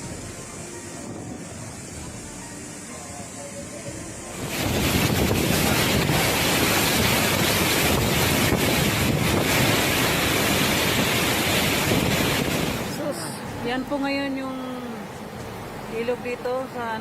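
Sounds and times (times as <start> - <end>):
strong wind gusting on microphone: 3.6 - 13.8.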